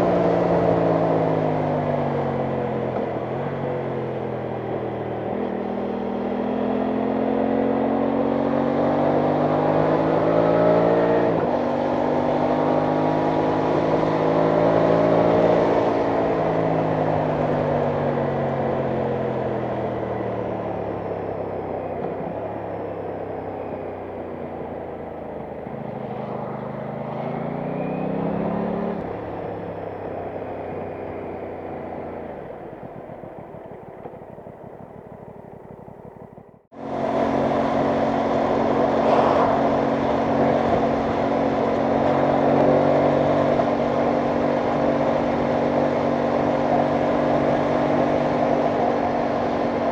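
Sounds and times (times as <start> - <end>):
motorcycle engine accelerating: 0.0 - 49.9
wind noise: 38.4 - 44.9.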